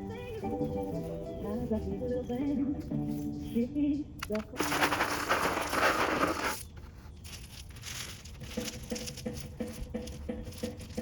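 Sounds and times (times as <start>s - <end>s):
crunching scraping noise: 4.4s - 11.0s.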